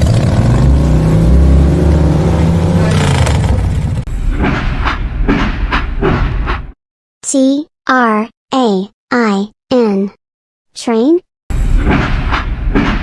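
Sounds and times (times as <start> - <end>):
motorcycle engine revving: 0.0 - 4.1.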